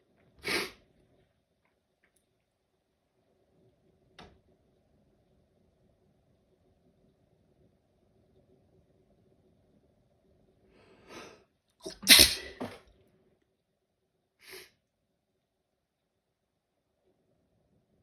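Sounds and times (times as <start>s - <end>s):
person sneezing loudly: 11.8s - 12.8s.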